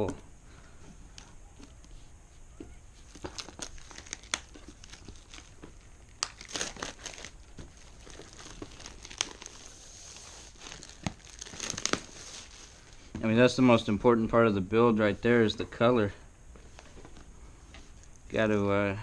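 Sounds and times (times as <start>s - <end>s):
cardboard packaging crinkling: 2.9s - 13.0s.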